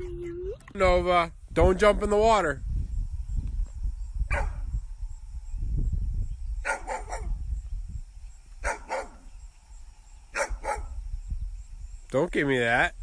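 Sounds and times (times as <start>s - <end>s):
dog barking: 4.3s - 4.6s, 6.6s - 7.4s, 8.6s - 9.2s, 10.3s - 11.0s.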